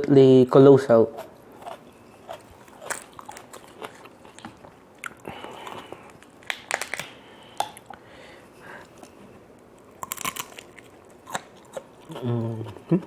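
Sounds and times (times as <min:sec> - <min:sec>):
wet chewing: 0:01.1 - 0:08.0, 0:08.8 - 0:13.0
prawn shells cracking: 0:02.4 - 0:04.6, 0:06.0 - 0:07.8, 0:09.9 - 0:11.5.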